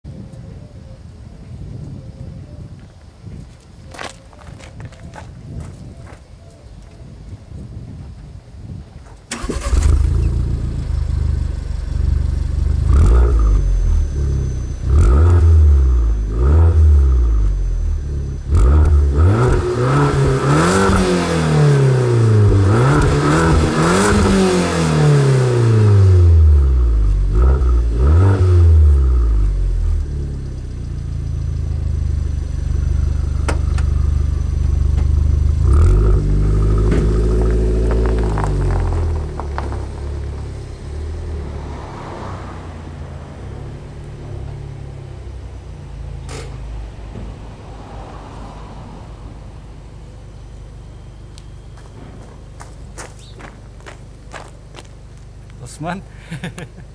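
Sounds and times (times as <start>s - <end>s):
car engine revving: 9.3s - 45.6s
car engine starting and idling: 9.3s - 56.9s.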